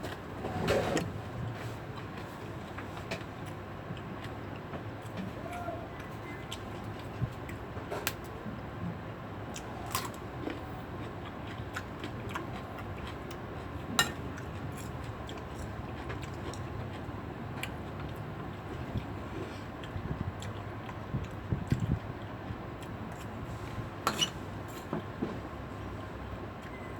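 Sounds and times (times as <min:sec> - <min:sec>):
steady low hum: 0:00.0 - 0:26.9.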